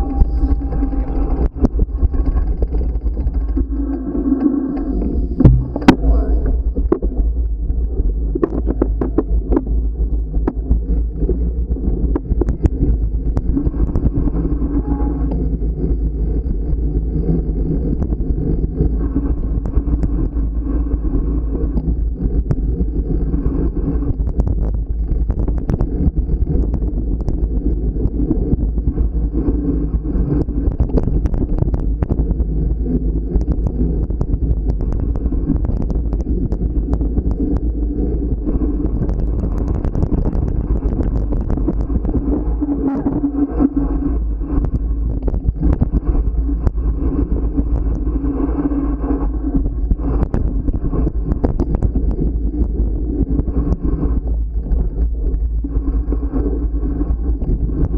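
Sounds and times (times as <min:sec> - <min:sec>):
bike clicks and rattles: 0:00.0 - 0:06.1
wind rumble on microphone: 0:00.0 - 0:57.9.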